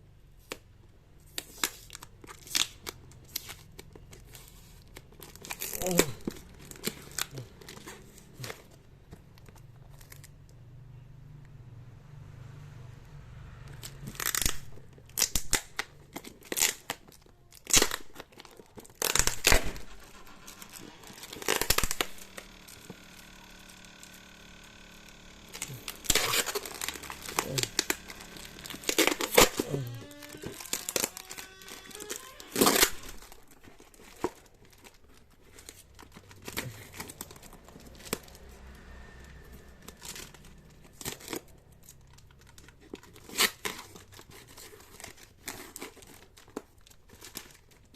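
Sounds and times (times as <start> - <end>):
plastic wrap crinkling and tearing: 1.2 - 10.4, 13.8 - 47.9
pitched screech: 19.0 - 33.5.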